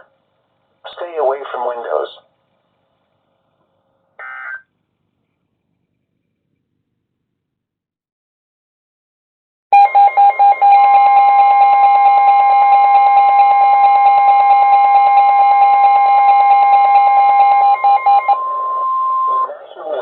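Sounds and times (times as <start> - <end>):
pulsing buzzing alarm tone: 9.8 - 19.5
steady pure alarm tone: 9.8 - 20.0.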